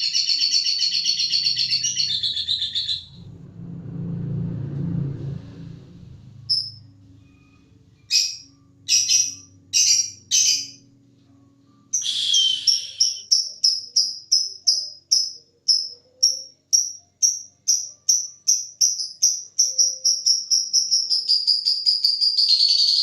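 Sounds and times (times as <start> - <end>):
bird shrill chattering song: 0.0 - 3.2, 8.1 - 10.8, 12.0 - 14.9, 19.0 - 23.0
bird chirping: 0.0 - 3.3, 6.5 - 10.9, 11.9 - 23.0.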